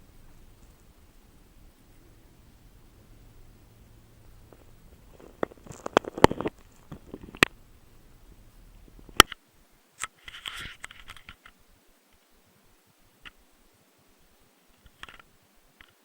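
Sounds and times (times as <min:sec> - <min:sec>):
small objects clicking and knocking: 0:04.3 - 0:07.7, 0:08.7 - 0:09.4, 0:14.8 - 0:16.0
brief rustle: 0:10.0 - 0:12.3.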